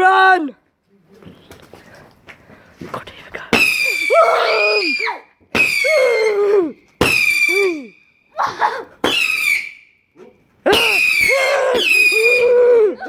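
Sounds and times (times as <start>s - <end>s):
whistling firework shots: 3.5s - 8.4s, 9.0s - 10.0s, 10.7s - 12.7s.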